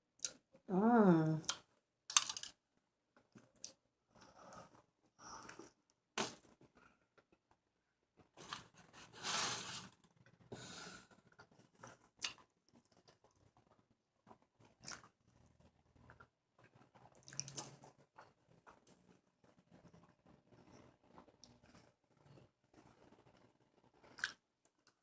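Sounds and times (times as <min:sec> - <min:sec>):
chewing and crunching burger: 0:11.3 - 0:25.0.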